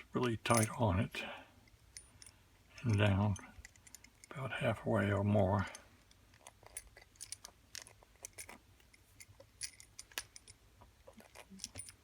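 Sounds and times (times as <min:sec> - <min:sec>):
small metallic clicks and scrapes: 0:01.6 - 0:04.5, 0:05.6 - 0:12.0.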